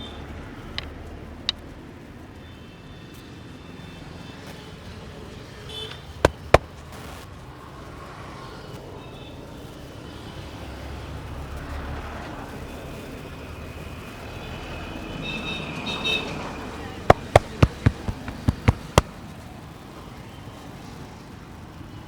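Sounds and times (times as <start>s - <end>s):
road traffic hum: 5.4s - 7.1s, 15.9s - 19.2s
hands slapping head: 6.3s - 6.6s, 17.1s - 19.1s.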